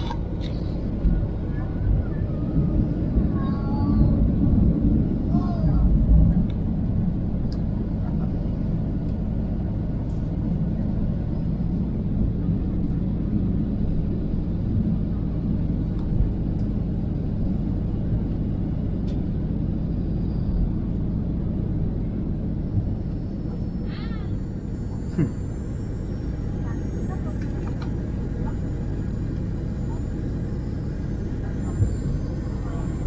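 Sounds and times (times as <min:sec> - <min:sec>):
airliner cabin rumble: 0:00.0 - 0:33.0.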